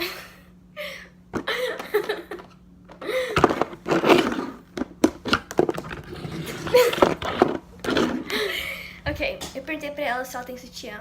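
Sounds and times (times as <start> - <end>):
women's voices: 9.0 - 11.0.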